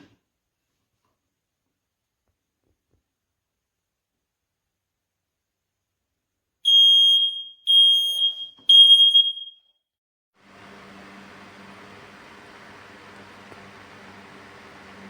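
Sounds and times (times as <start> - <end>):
smoke alarm beeps: 6.7 - 9.7.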